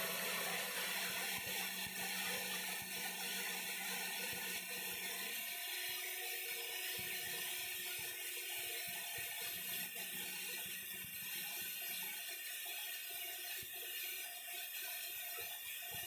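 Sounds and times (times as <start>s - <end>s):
core drill grinding concrete: 0.0s - 8.9s.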